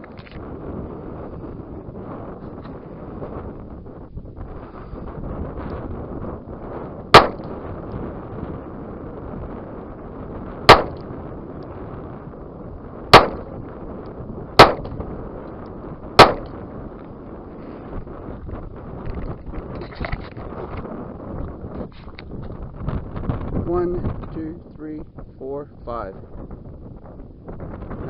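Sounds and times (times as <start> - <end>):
wind noise on microphone: 0.0 - 28.0
revolver shots: 7.2 - 7.5, 10.7 - 11.1, 13.2 - 13.5, 14.6 - 15.0, 16.2 - 16.5.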